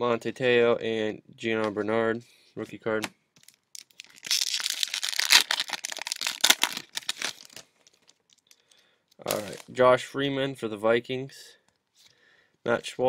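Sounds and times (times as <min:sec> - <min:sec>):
wrapper tearing and crinkling: 0:03.4 - 0:08.6, 0:09.3 - 0:09.8.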